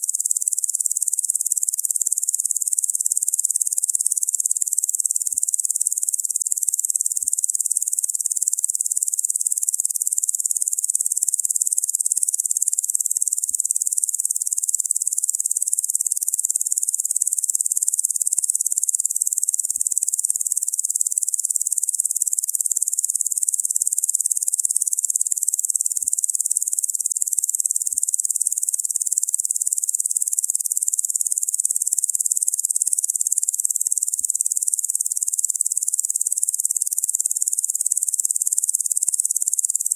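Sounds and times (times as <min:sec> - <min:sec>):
insects buzzing high-pitched: 0:00.0 - 0:39.9.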